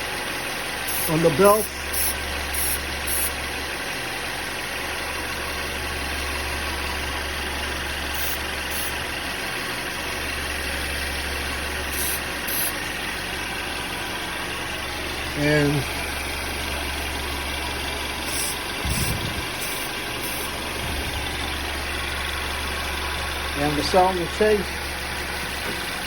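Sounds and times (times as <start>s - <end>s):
car engine idling: 0.0s - 26.0s
aerosol spray hisses: 0.9s - 1.2s, 1.9s - 3.3s, 8.2s - 9.0s, 11.9s - 12.7s, 18.3s - 21.2s.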